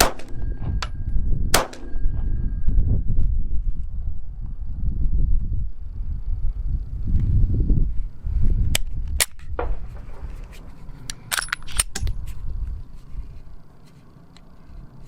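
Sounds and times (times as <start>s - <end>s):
pistol shots: 0.0s - 0.8s, 1.5s - 2.2s
wind rumbling on microphone: 0.0s - 14.0s.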